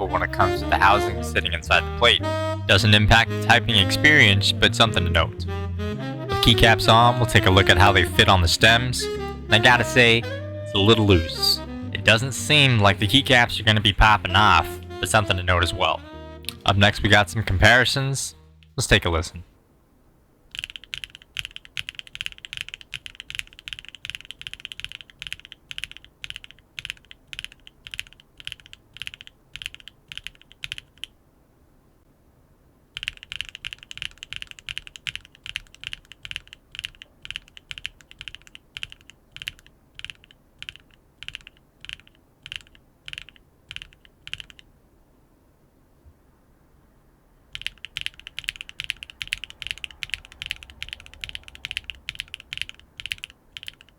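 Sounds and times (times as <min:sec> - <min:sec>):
mechanical keyboard switches clacking: 0:33.0 - 0:44.6, 0:47.6 - 0:53.9.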